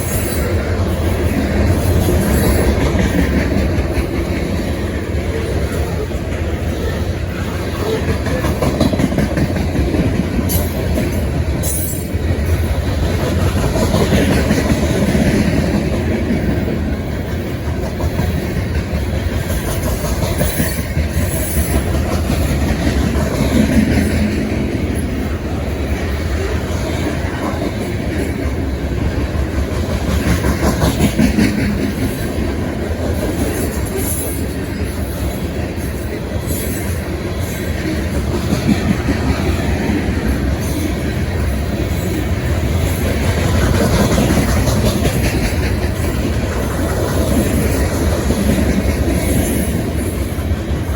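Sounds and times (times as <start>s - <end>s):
train wheels clattering on rails: 0.0s - 50.9s.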